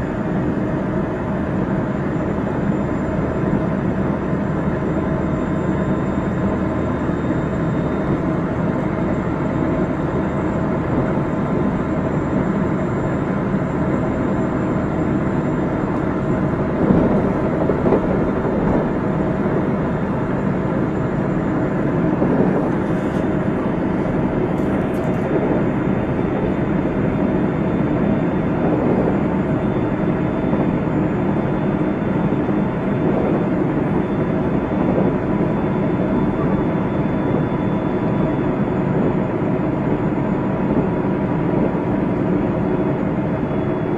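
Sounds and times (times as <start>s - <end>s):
train wheels rumbling on rail: 15.9s - 20.2s.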